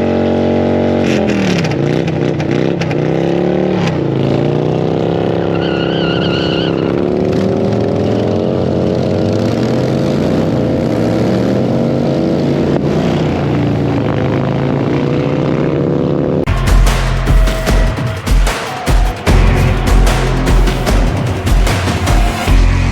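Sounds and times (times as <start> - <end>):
motorcycle engine accelerating: 0.0 - 5.9, 19.2 - 22.9.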